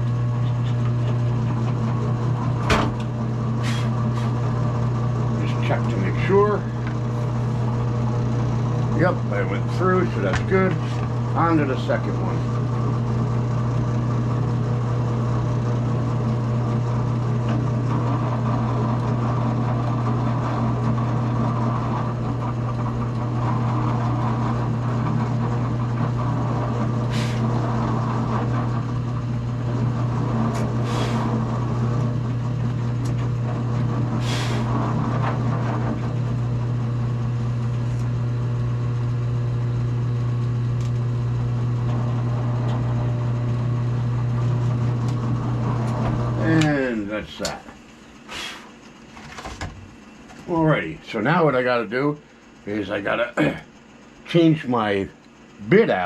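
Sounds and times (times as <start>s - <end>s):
drill press motor humming: 0.0s - 56.0s
short high hisses: 3.6s - 4.4s, 48.3s - 48.7s.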